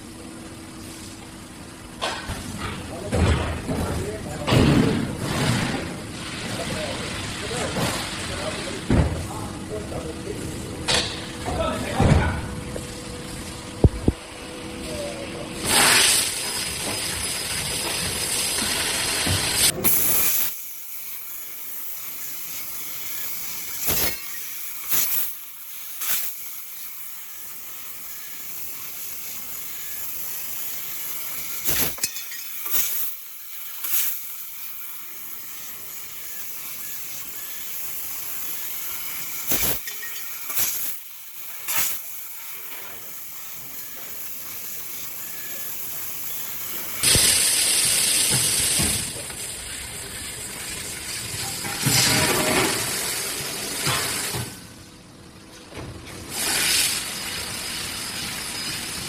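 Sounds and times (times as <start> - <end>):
hiss of assist gas: 18.1 - 49.2, 56.3 - 59.0
laser cutter bursts: 18.2 - 49.1.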